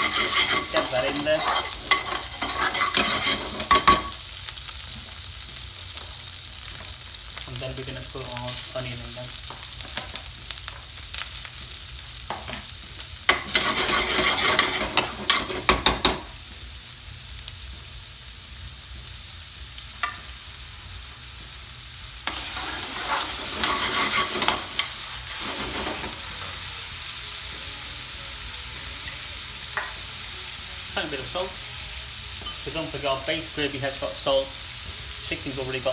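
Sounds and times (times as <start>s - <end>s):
spoon scraping a pan: 0.0s - 4.2s, 13.3s - 16.3s, 22.3s - 26.6s
onions sizzling in a pan: 0.0s - 35.9s.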